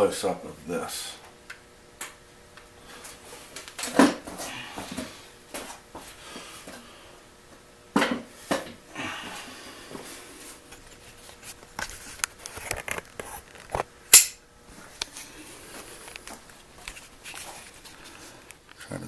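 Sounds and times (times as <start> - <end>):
rustling scrape: 16.8 - 18.4.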